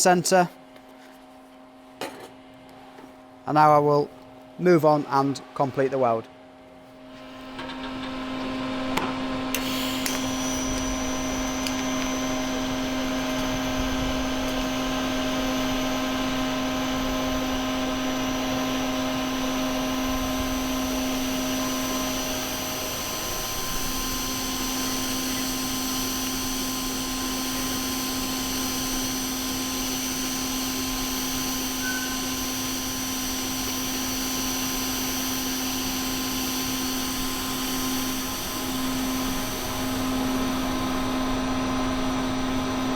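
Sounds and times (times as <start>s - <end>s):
welding arc hissing: 9.5s - 40.8s.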